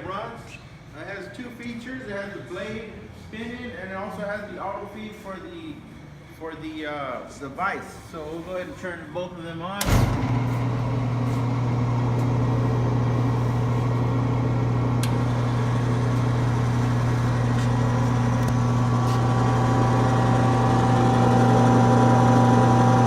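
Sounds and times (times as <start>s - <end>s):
electric motor hum: 10.1s - 23.0s
saw whine: 11.2s - 23.0s.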